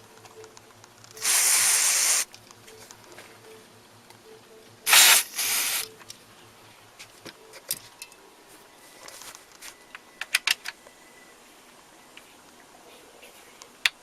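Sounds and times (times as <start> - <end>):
spray can hissing: 1.2 - 2.3, 4.9 - 5.9.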